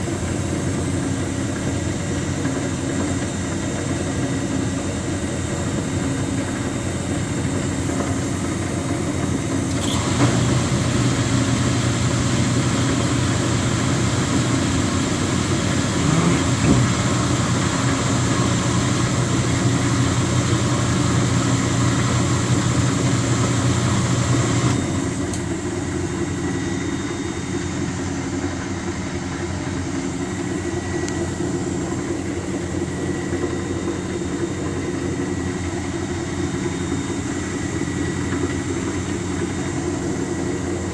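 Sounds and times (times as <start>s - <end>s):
washing machine humming: 0.0s - 40.9s.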